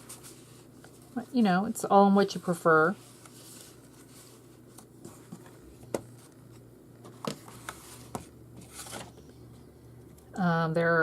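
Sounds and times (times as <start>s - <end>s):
paper rustle: 2.9s - 9.2s.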